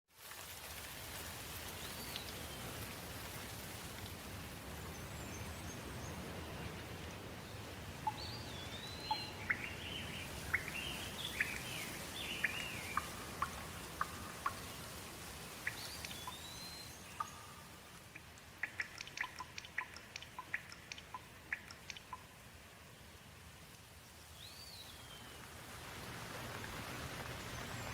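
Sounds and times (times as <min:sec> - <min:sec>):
steady rainfall: 0:00.1 - 0:27.9
water drips: 0:00.2 - 0:06.6, 0:07.7 - 0:22.8
birds chirping and whistling: 0:08.0 - 0:14.7, 0:15.6 - 0:17.7.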